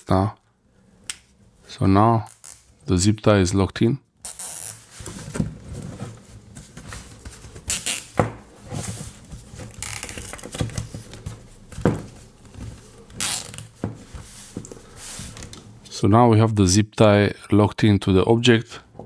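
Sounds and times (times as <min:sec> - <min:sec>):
plastic rustling: 0:04.4 - 0:15.7
zip tie sharp clicks: 0:13.2 - 0:13.6.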